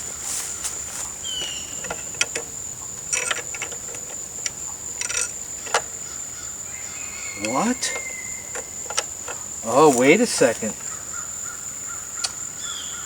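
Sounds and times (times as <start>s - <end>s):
crickets trilling: 0.0s - 13.0s
metallic clicks of bolts: 1.8s - 5.9s.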